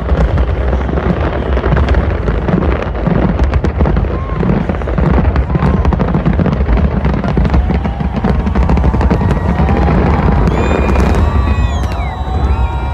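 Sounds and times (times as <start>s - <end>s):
fireworks bangs and crackling: 0.0s - 12.9s
whistling fireworks: 0.0s - 12.9s.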